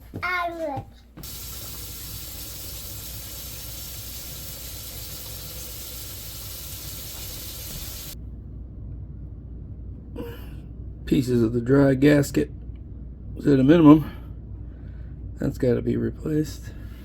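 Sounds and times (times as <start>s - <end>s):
running water hissing: 1.2s - 8.2s.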